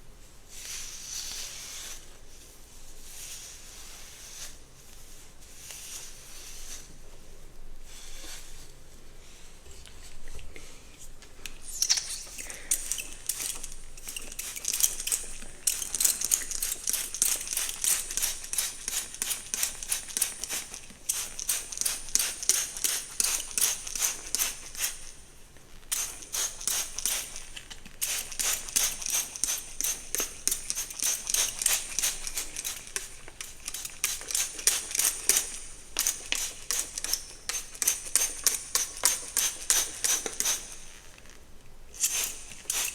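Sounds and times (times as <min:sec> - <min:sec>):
hairbrush swishing through hair: 0:00.5 - 0:07.0.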